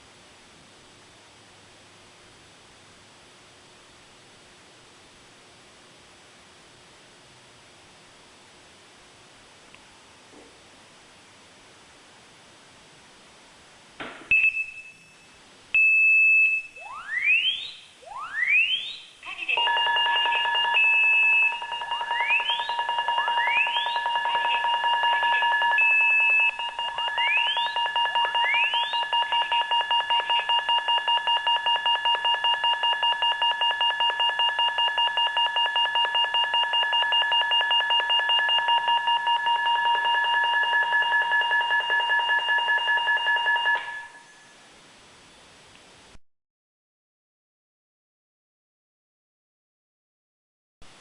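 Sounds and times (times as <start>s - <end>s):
fire alarm tones: 14.3s - 15.2s, 15.8s - 44.5s.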